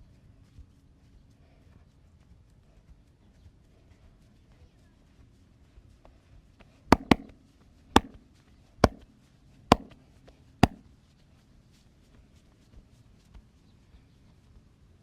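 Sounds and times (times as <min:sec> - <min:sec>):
hand slaps on body: 0:07.0 - 0:07.3, 0:08.8 - 0:09.0, 0:09.7 - 0:09.9.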